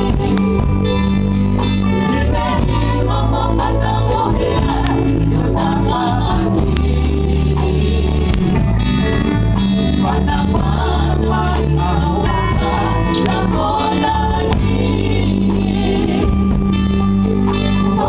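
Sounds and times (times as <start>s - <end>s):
gospel band playing: 0.0s - 18.0s
sustained bass notes: 0.0s - 18.0s
voices singing: 1.8s - 8.8s, 9.8s - 16.7s.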